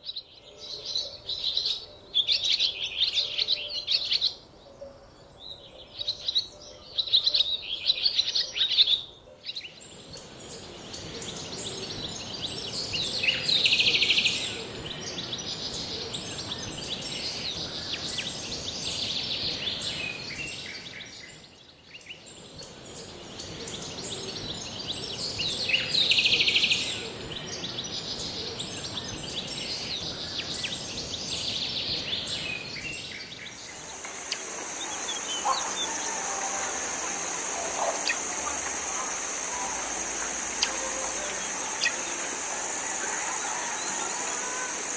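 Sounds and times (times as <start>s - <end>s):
steady high-pitched hiss: 9.4s - 44.9s
birds chirping: 9.5s - 44.9s.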